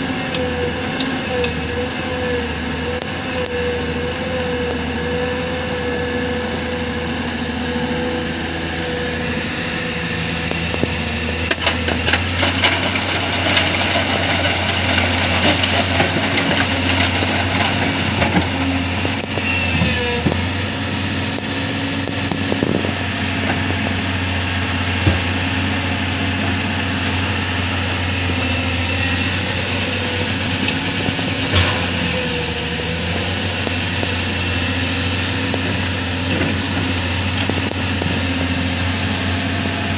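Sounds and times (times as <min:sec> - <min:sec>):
excavator diesel engine running: 0:00.0 - 0:39.9
bucket knocking and scraping rock: 0:11.6 - 0:20.4.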